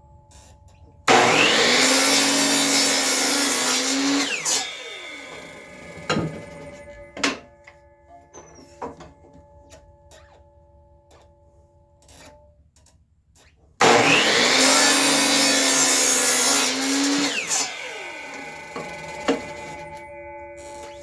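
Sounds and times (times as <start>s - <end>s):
miter saw cutting wood: 1.1s - 7.5s, 13.8s - 21.0s
saw winding down whine: 1.1s - 11.3s, 13.8s - 21.0s
quiet background music: 6.7s - 12.8s.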